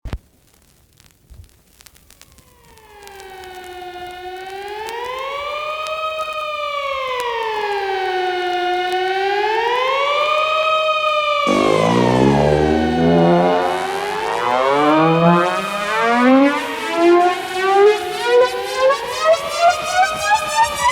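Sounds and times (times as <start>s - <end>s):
vinyl clicks and crackle: 0.1s - 3.7s
wailing siren effect: 11.5s - 17.0s.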